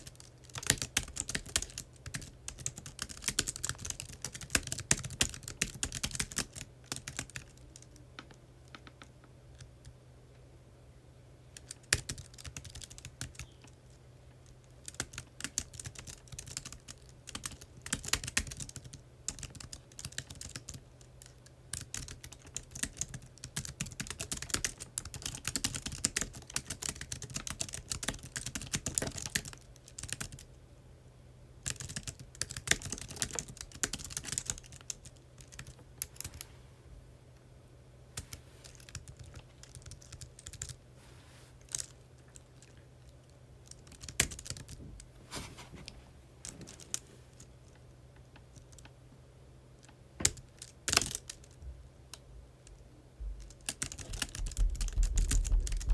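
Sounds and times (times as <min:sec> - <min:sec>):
typing on computer keyboard: 0:00.0 - 0:07.9, 0:11.6 - 0:30.5, 0:31.6 - 0:36.4, 0:38.2 - 0:40.8, 0:43.6 - 0:44.8, 0:50.2 - 0:51.6, 0:53.4 - 0:55.9.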